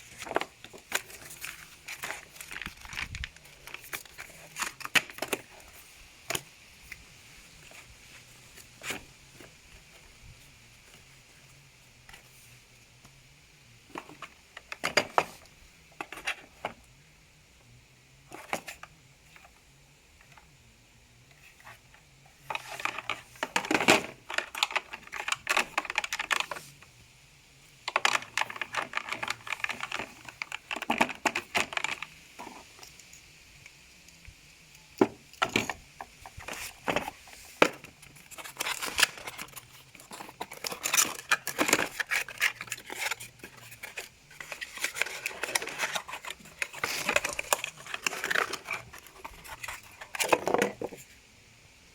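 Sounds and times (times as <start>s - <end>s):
packaging crinkling and rustling: 0.0s - 10.1s, 22.4s - 26.8s, 27.8s - 32.9s, 35.0s - 51.0s
parts clicking and knocking: 22.5s - 26.6s, 27.8s - 51.0s.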